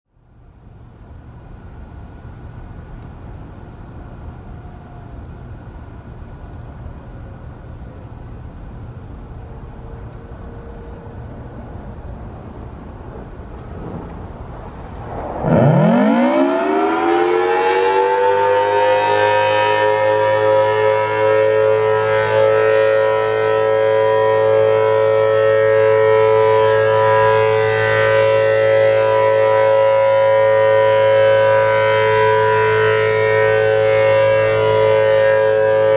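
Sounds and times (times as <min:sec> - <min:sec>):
low background rumble: 0:00.2 - 0:16.7
warning siren winding up: 0:15.4 - 0:20.0.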